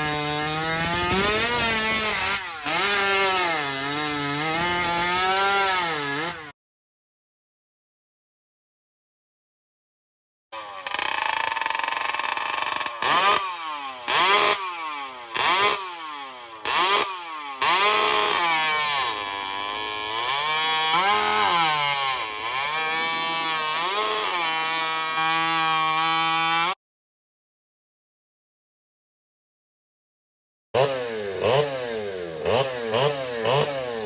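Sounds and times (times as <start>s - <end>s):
chainsaw engine revving: 0.0s - 6.5s, 10.6s - 26.8s, 30.8s - 34.0s.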